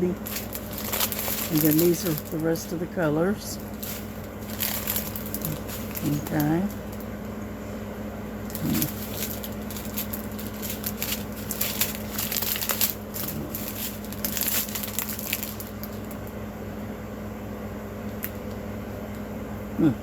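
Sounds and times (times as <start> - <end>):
plastic packets crinkling: 0.0 - 7.2, 8.4 - 16.4
steady low hum: 0.0 - 20.0.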